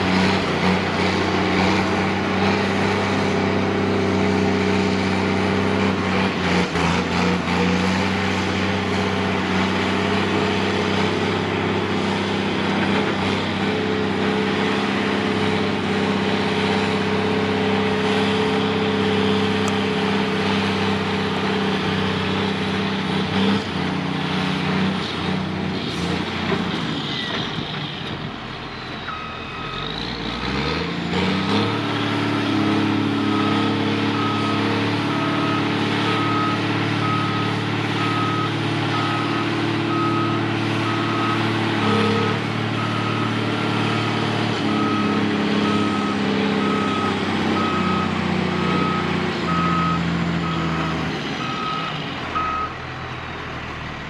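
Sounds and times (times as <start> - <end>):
heavy machinery diesel engine: 0.0 - 54.0.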